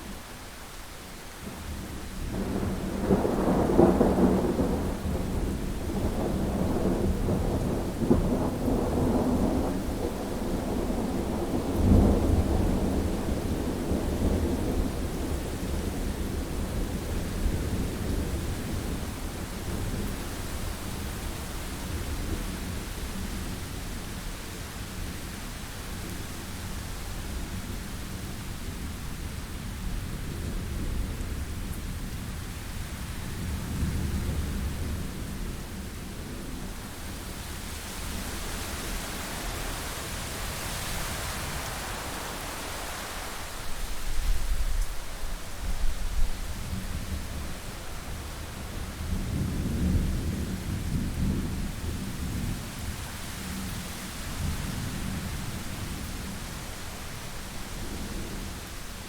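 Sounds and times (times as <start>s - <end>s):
steady rain: 0.0s - 59.0s
rolling thunder rumbles: 2.2s - 20.1s, 44.2s - 53.6s.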